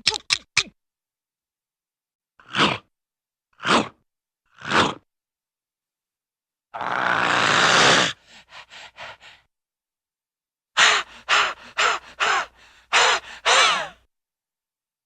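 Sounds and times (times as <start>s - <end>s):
cartoon dog panting: 8.2s - 9.5s, 10.8s - 14.0s
cartoon dog yipping: 13.0s - 13.9s.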